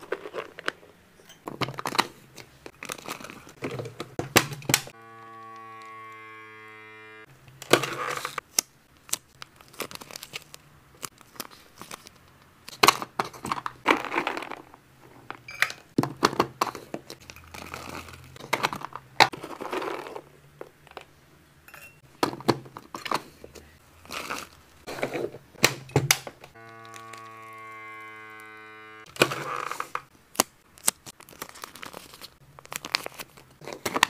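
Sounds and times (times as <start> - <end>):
packaging crinkling and tearing: 1.8 - 6.0, 7.7 - 13.0, 16.8 - 20.2, 26.5 - 28.1, 29.1 - 34.0.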